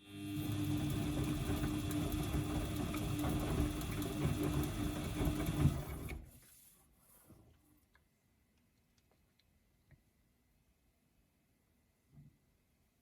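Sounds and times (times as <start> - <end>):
washing machine motor humming: 0.0 - 6.3.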